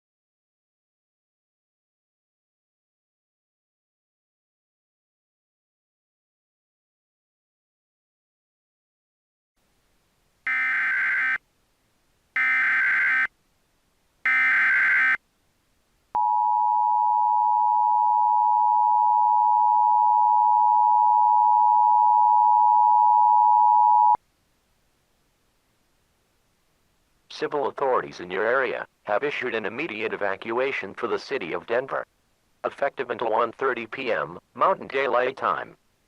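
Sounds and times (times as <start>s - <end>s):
two-tone attention signal: 16.2s - 24.2s.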